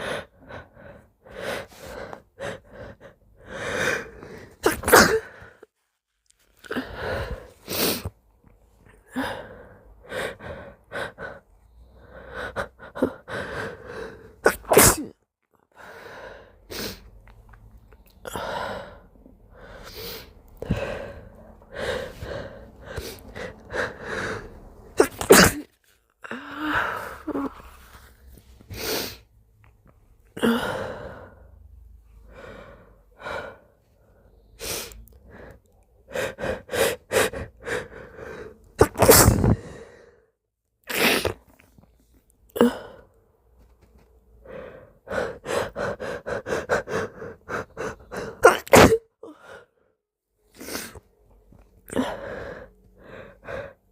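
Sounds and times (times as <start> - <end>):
person sneezing: 4.6 - 5.4, 14.4 - 15.2, 25.0 - 25.7, 38.8 - 39.6, 40.9 - 41.5, 48.2 - 49.1.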